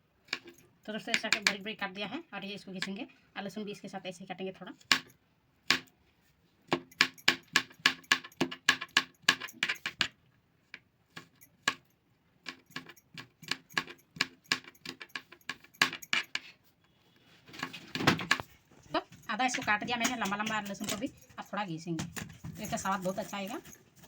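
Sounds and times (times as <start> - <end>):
knife chopping garlic: 0.3 - 1.9.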